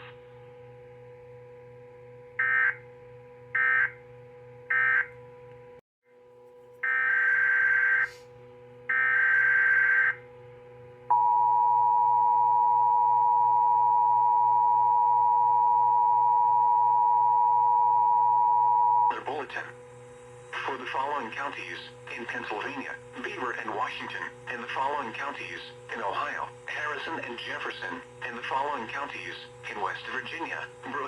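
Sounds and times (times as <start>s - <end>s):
faint steady hum: 0.0s - 31.0s
emergency alert data bursts: 2.4s - 2.8s, 3.6s - 4.0s, 4.7s - 5.1s, 6.8s - 8.2s, 8.9s - 10.2s
two-tone attention signal: 11.1s - 19.2s.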